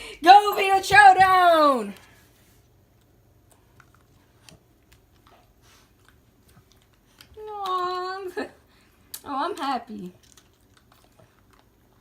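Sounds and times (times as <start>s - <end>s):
person's voice: 0.0s - 2.0s
dog chewing and crunching: 2.8s - 8.2s, 9.0s - 12.0s.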